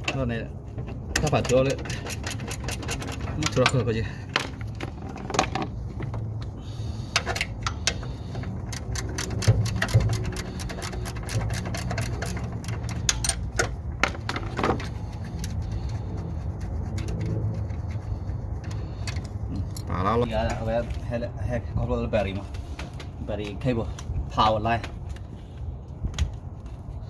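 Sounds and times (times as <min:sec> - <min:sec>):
steady low hum: 0:00.0 - 0:27.0
metallic clicks of hand tools: 0:01.1 - 0:03.8, 0:07.1 - 0:15.6.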